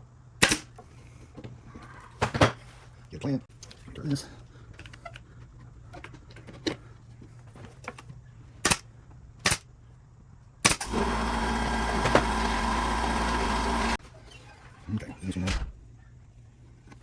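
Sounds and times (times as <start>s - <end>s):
pneumatic nailer shots: 0.4s - 0.8s, 10.6s - 14.0s
air compressor running: 10.8s - 14.0s.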